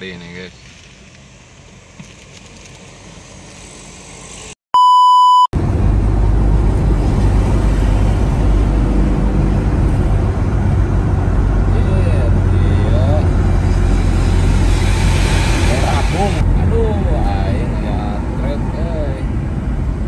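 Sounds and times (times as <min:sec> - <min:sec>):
faint road noise: 0:00.0 - 0:04.6, 0:05.7 - 0:20.0
electronic beep: 0:04.8 - 0:05.5
low rumble of vehicle in motion: 0:05.6 - 0:20.0.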